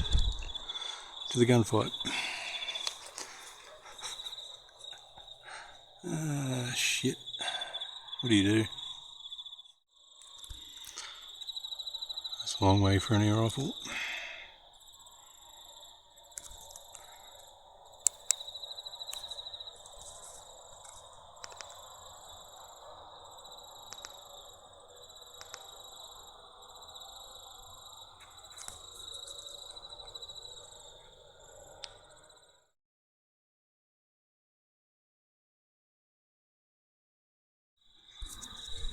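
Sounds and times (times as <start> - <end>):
crickets trilling: 0.0 - 32.7, 37.8 - 38.9
sharp clicks: 1.8 - 4.4, 18.0 - 18.5, 20.8 - 21.8, 23.9 - 24.2, 25.4 - 25.7.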